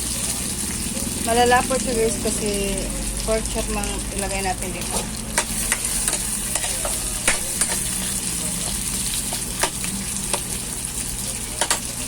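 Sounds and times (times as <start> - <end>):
food sizzling in frying pan: 0.0 - 12.0
spatula clicking against pan: 11.6 - 11.9.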